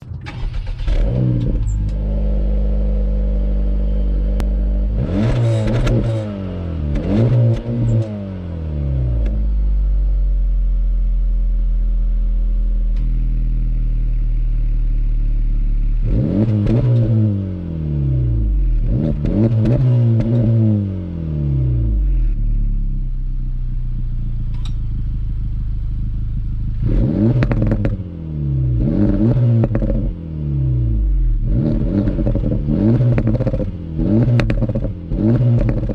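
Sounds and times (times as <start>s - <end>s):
car engine idling and revving: 0.0s - 35.9s
exhaust pops and crackles: 27.4s - 28.0s, 29.6s - 30.1s, 31.7s - 35.9s.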